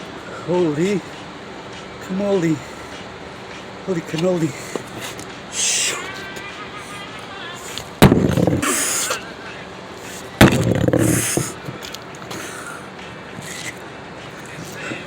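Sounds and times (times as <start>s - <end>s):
debris clatter: 8.0s - 8.7s, 10.4s - 11.5s
hammer blows cracking: 8.0s - 8.8s, 10.4s - 11.6s.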